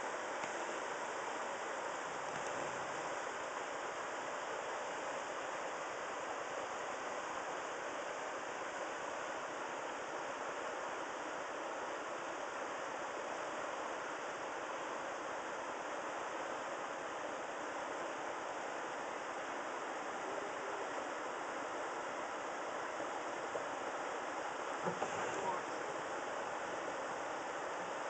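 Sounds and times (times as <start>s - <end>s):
river rapids rushing: 14.2s - 28.0s.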